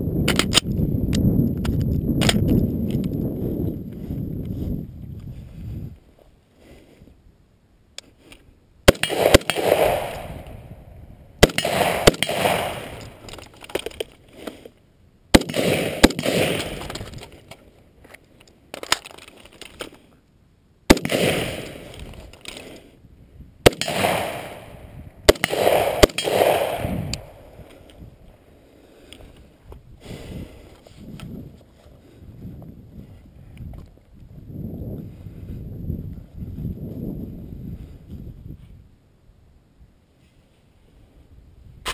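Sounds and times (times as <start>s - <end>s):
rifle shots: 8.9s - 10.8s, 11.4s - 13.4s, 15.3s - 17.2s, 20.9s - 22.7s, 23.6s - 27.6s
rolling echo of gunshots: 8.9s - 13.3s, 15.3s - 17.0s, 20.9s - 22.0s, 23.6s - 27.6s.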